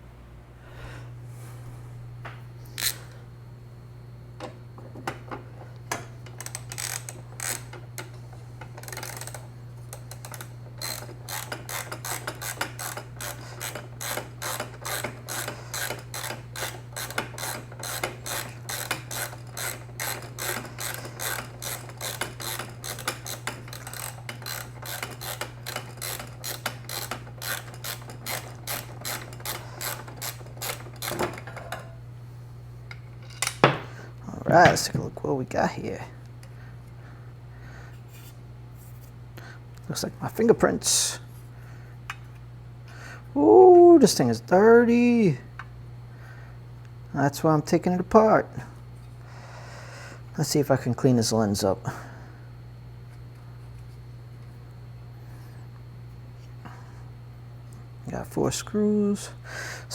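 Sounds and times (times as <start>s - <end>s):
hand ratchet clicking: 5.9s - 31.6s.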